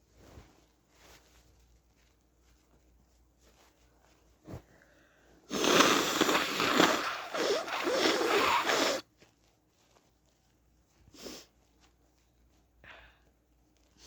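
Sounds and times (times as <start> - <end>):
short sniff: 5.5 - 9.0, 11.1 - 11.6
person blowing nose: 5.5 - 9.1.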